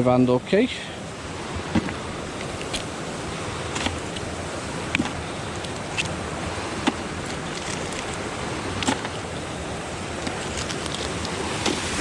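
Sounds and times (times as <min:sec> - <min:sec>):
wind noise on microphone: 0:01.1 - 0:12.0.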